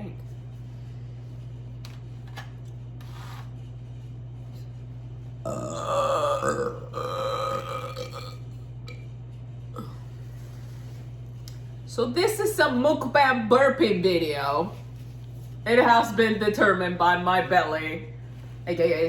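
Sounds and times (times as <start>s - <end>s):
woman belching loudly: 5.5s - 8.4s.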